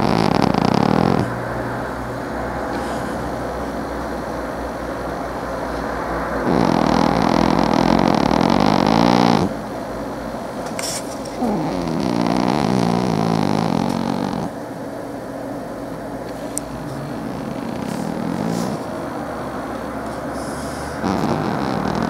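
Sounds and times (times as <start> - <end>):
cat snoring: 0.0 - 1.4, 6.4 - 9.6, 11.4 - 14.6, 16.7 - 19.0, 20.3 - 22.0
cat breathing: 16.4 - 19.0, 20.1 - 22.0.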